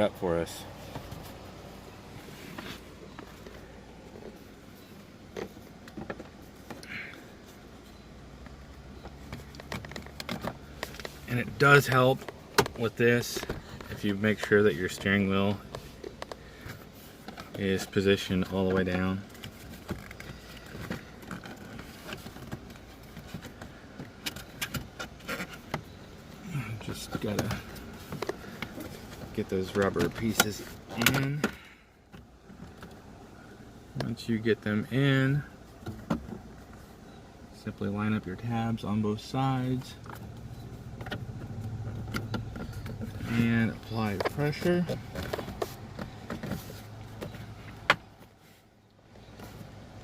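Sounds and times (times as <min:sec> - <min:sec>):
plastic parts clicking and knocking: 0:09.0 - 0:11.1
short rustle: 0:39.8 - 0:49.9.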